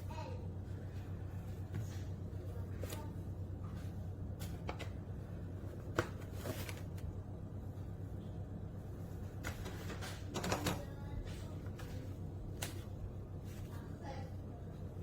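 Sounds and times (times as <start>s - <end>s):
steady low hum: 0.0s - 15.0s
clicks and rustles of handling: 5.8s - 7.1s.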